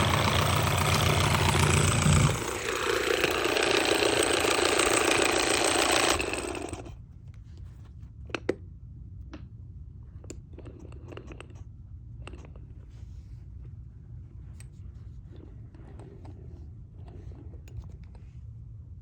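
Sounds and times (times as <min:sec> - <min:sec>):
small electric motor whirring: 0:00.0 - 0:07.0.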